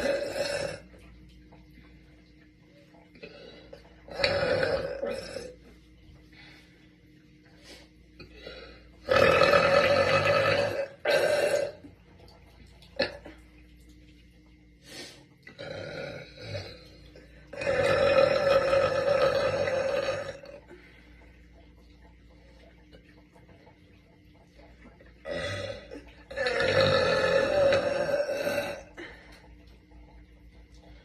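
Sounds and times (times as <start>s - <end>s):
woman burping: 0.0s - 0.9s, 4.1s - 5.6s, 9.0s - 11.8s, 17.5s - 20.6s, 25.2s - 29.2s.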